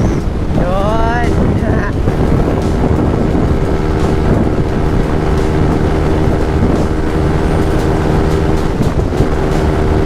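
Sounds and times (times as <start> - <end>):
wind buffeting microphone: 0.0 - 10.0
scooter engine running flat out: 2.1 - 10.0.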